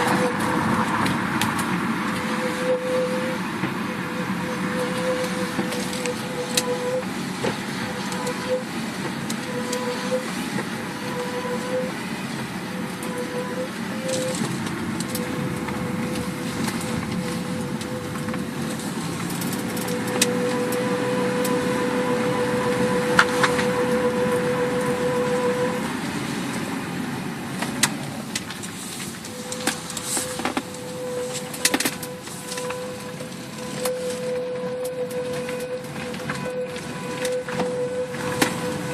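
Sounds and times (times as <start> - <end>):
cabin road noise: 0.0 - 38.9
steady humming tone: 10.9 - 26.1.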